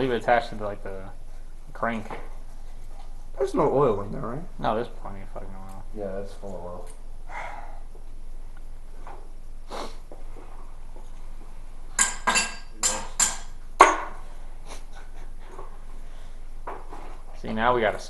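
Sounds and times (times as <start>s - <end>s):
metal clinking against metal: 12.0s - 14.2s.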